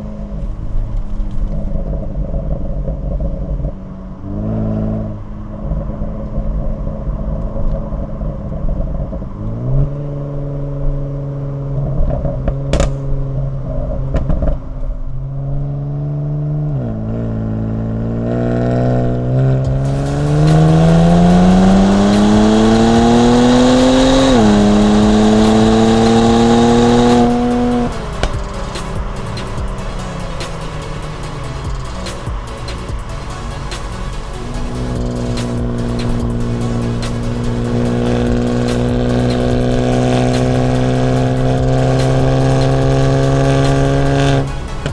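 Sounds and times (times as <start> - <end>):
car exhaust revving: 0.0 - 44.9
exhaust crack: 0.0 - 44.9
harsh rushing noise: 12.0 - 15.6, 18.4 - 44.9.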